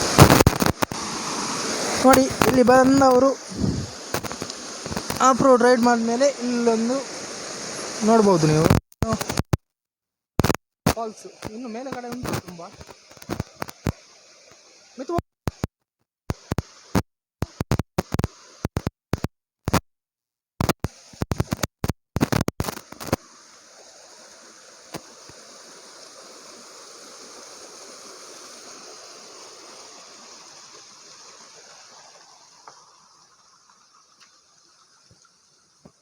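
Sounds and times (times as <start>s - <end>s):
waterfall rushing: 0.0s - 9.3s, 22.8s - 33.4s.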